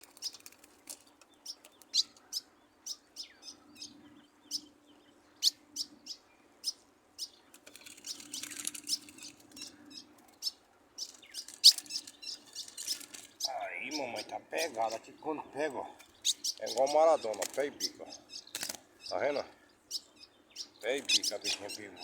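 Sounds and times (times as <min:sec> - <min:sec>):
songbird chirping and twittering: 0:00.0 - 0:22.0.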